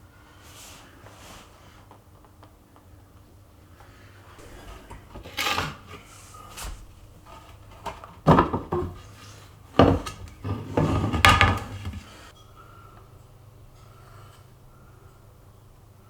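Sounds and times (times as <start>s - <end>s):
wooden parts knocking and clattering: 4.4s - 12.2s
wood scraping: 4.4s - 12.3s.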